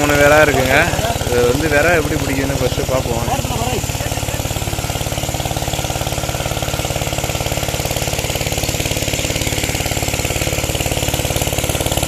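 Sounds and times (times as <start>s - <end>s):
small engine running: 0.0s - 12.0s.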